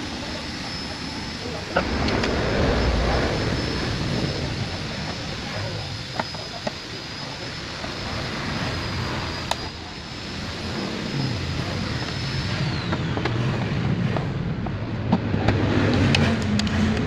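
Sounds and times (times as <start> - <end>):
steady rushing background noise: 0.0 - 17.0.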